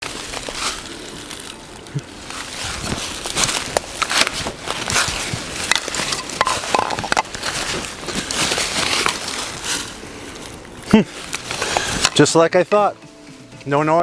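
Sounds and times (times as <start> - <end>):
footsteps crunching dry leaves: 0.0 - 13.4.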